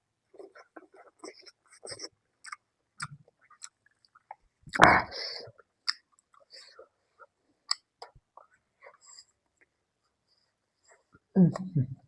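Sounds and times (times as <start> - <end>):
person chewing food: 0.3 - 9.3.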